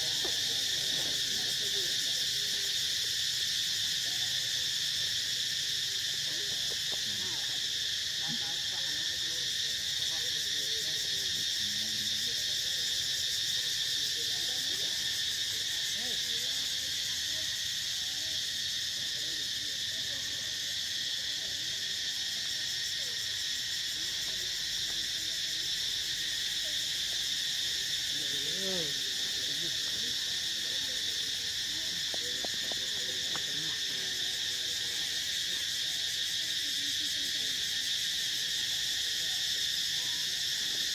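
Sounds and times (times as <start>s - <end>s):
forest insect chorus: 0.0s - 40.9s.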